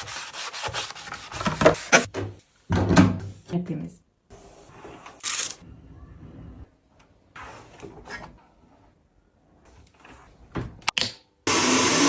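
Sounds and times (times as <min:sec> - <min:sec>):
hands scraping and scrubbing parts: 0:00.0 - 0:02.1.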